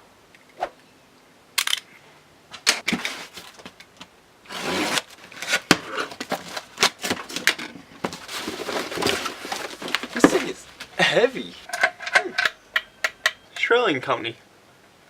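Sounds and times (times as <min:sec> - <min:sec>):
rubbing or rustling: 0:02.8 - 0:03.8, 0:04.5 - 0:11.0.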